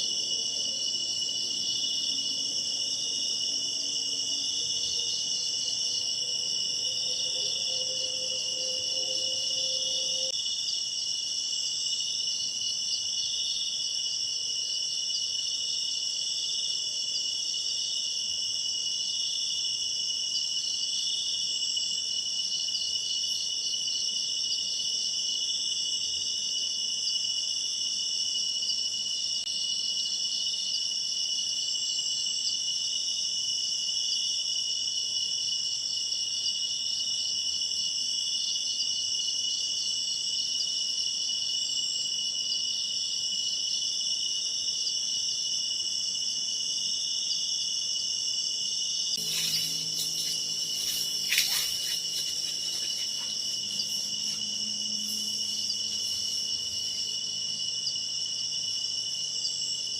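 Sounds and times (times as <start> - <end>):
insects trilling: 0.0 - 13.8, 36.4 - 59.9.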